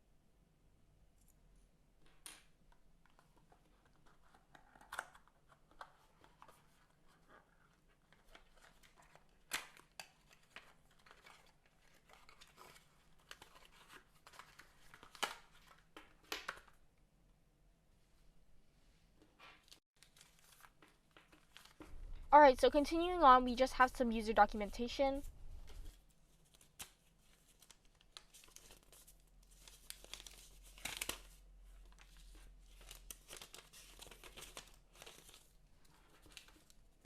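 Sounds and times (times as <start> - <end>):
cardboard and paper rustling: 3.1 - 16.6, 19.6 - 22.2, 24.5 - 37.0.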